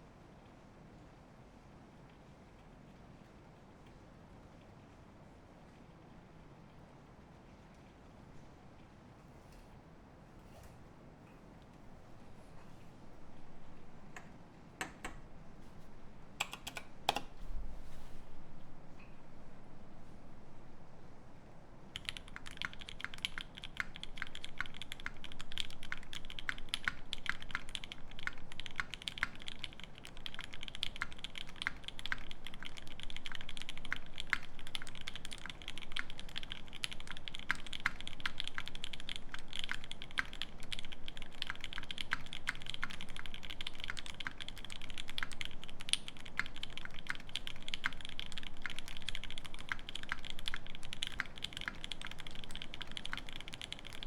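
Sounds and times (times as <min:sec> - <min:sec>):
mechanical keyboard typing: 0:16.4 - 0:17.3, 0:21.9 - 0:54.0.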